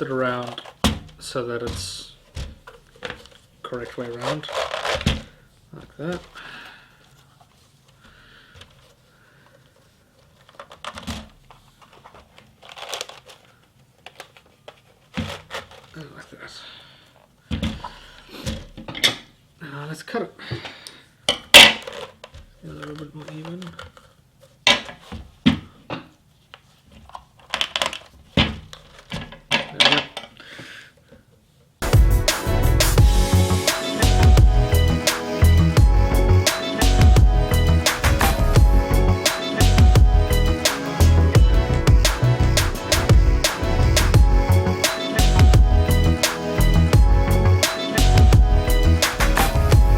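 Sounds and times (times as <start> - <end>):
plastic spool rustling and crinkling: 0.0 - 16.5, 21.5 - 30.4.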